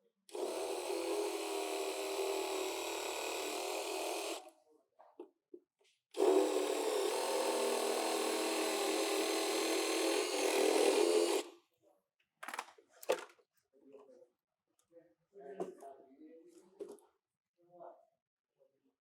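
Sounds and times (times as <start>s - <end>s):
electric drill running: 0.3s - 4.4s, 6.2s - 11.5s.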